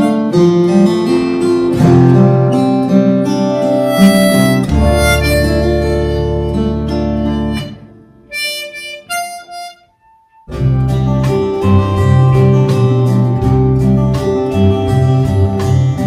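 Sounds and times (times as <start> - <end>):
acoustic guitar backing: 0.0 - 16.0
harmonica melody: 3.5 - 12.6.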